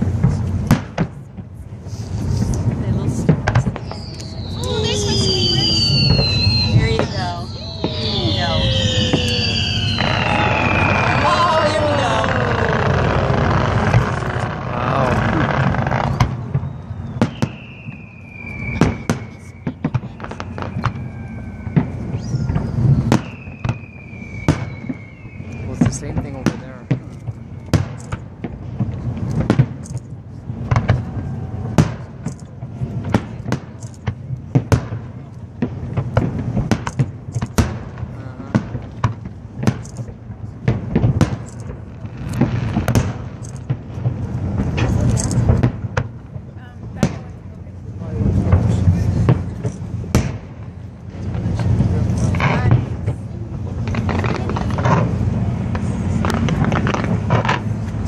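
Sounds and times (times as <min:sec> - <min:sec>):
fireworks bangs: 0:00.0 - 0:58.0
steady low rumble: 0:00.0 - 0:58.0
high falling whistles: 0:03.7 - 0:15.2, 0:15.9 - 0:28.1.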